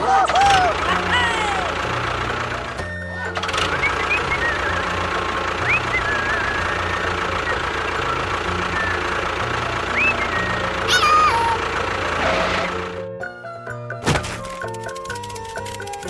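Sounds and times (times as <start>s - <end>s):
engine droning: 0.0s - 16.0s
rising whistle-like chirps: 3.8s - 8.2s, 9.9s - 11.6s.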